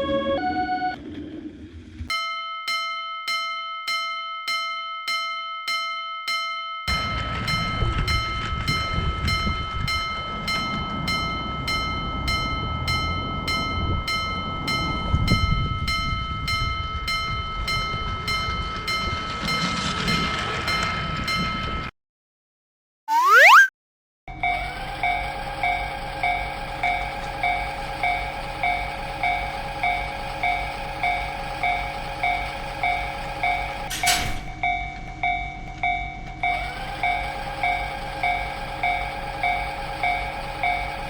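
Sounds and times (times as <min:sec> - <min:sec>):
railroad crossing alarm ringing: 0:00.0 - 0:01.0, 0:06.9 - 0:19.8, 0:24.3 - 0:41.0
train rumbling past: 0:00.0 - 0:02.1, 0:06.9 - 0:21.9, 0:24.4 - 0:41.0.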